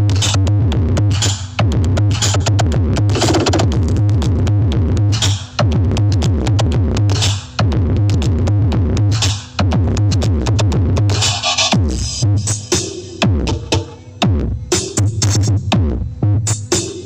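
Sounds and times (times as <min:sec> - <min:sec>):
electronic dance music: 0:03.1 - 0:04.0.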